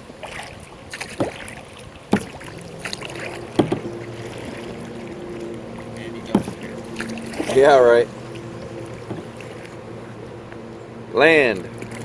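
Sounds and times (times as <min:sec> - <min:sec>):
paddle strokes in water: 0:00.0 - 0:10.8, 0:11.5 - 0:12.0
sharp knocks: 0:02.1 - 0:04.1, 0:06.3 - 0:07.4, 0:08.6 - 0:09.7.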